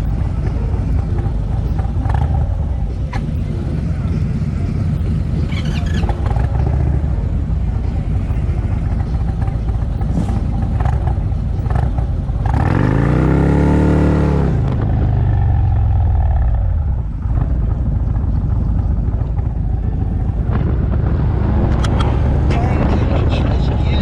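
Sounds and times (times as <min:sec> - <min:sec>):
motorcycle engine revving: 0:00.0 - 0:24.0
motorcycle engines rumbling: 0:00.0 - 0:24.0.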